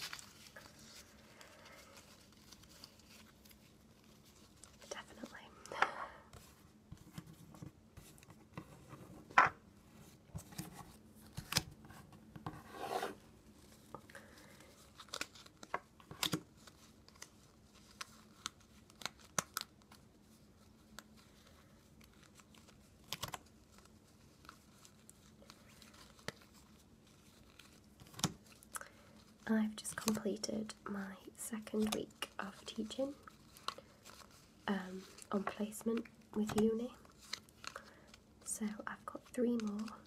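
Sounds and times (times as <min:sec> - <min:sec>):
papery rustles of cards: 0:00.0 - 0:09.0, 0:12.7 - 0:40.0.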